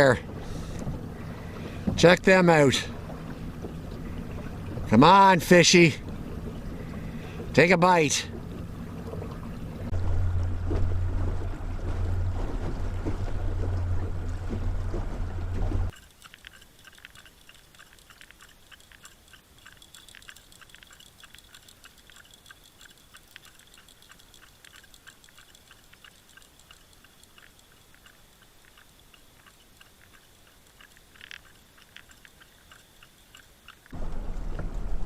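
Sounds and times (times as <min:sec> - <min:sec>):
underwater clicks and crackles: 0:10.6 - 0:35.0.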